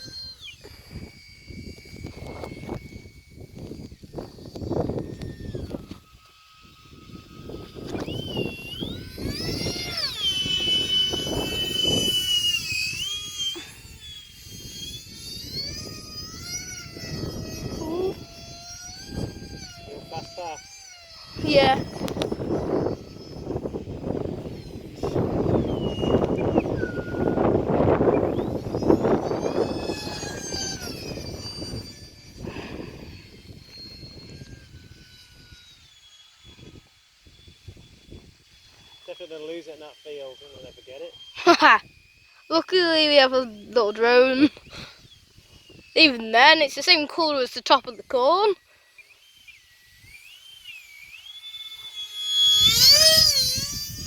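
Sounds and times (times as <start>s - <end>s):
wind rumbling on microphone: 0.0s - 39.0s, 52.3s - 54.0s
electric ducted fans whining: 0.0s - 54.0s.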